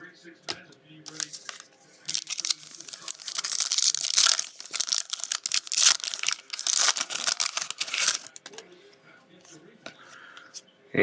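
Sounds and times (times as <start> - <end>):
foil wrappers tearing and crinkling: 1.1 - 8.4.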